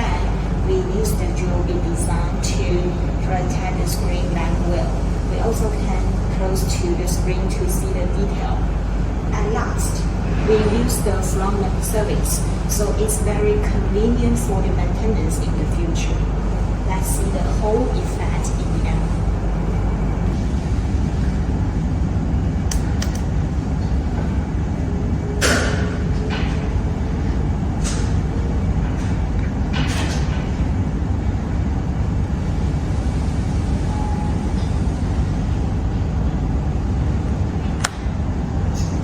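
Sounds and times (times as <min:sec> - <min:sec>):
low machinery rumble: 0:00.0 - 0:39.0.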